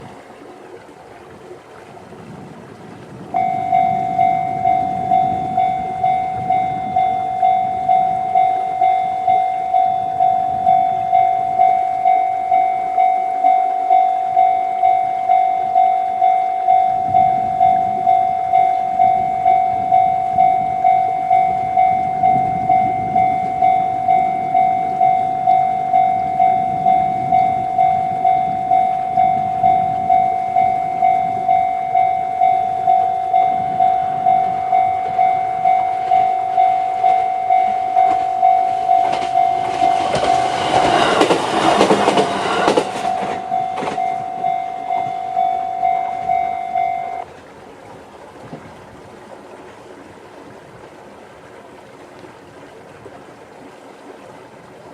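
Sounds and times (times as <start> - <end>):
level crossing alarm ringing: 3.4 - 47.3
train wheels clacking over rail joints: 39.0 - 44.4.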